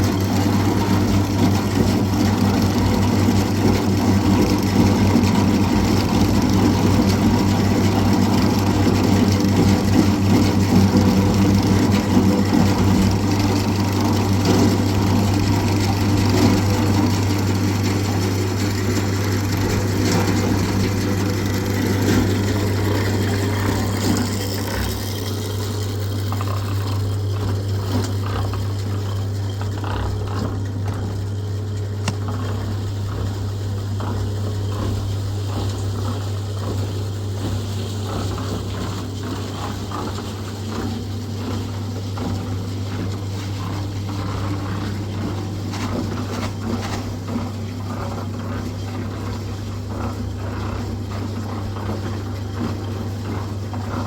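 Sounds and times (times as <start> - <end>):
motor-driven machine humming: 4.3 - 40.0.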